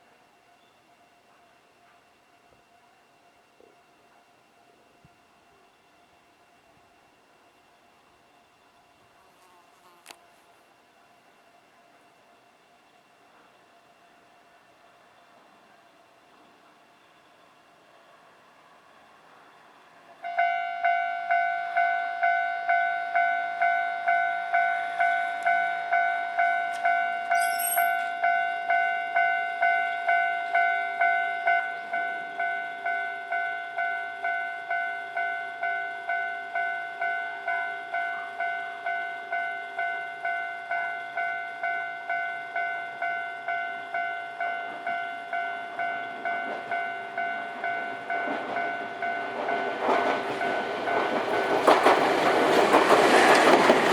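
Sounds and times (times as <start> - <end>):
train rumble: 14.4 - 53.9
level crossing bell clanging: 20.4 - 51.6.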